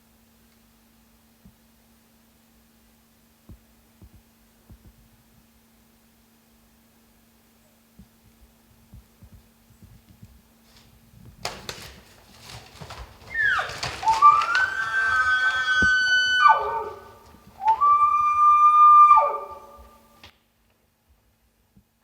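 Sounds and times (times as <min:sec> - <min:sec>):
clicks and rustles: 0:09.2 - 0:18.6
elk bugling: 0:12.6 - 0:20.3.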